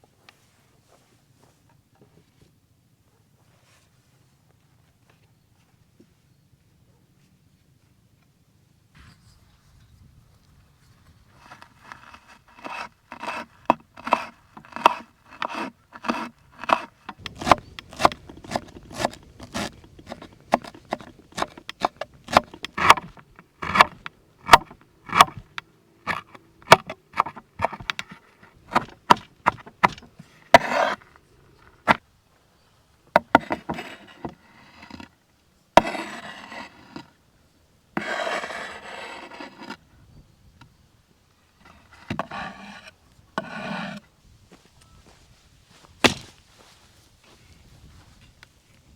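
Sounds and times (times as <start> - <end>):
long scraping: 9.0 - 32.0, 33.2 - 35.2, 35.8 - 37.2, 38.0 - 39.8, 41.6 - 44.1
chopping strokes on wood: 11.4 - 31.1, 31.7 - 32.0, 33.2 - 35.1, 35.8 - 37.1, 42.0 - 42.8, 46.0 - 46.4.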